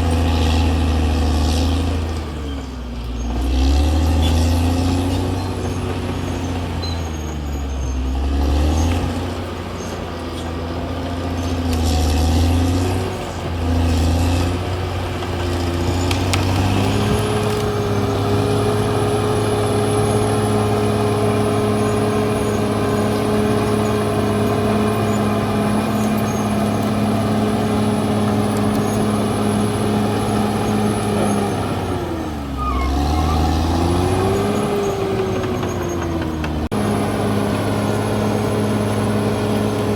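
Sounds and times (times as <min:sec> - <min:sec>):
bulldozer diesel engine working: 0:00.0 - 0:39.9.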